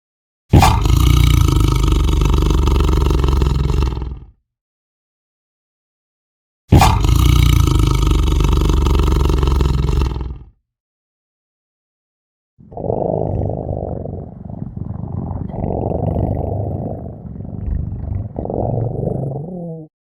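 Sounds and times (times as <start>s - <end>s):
tiger roaring: 0.5s - 4.3s, 6.7s - 10.5s, 12.6s - 19.9s.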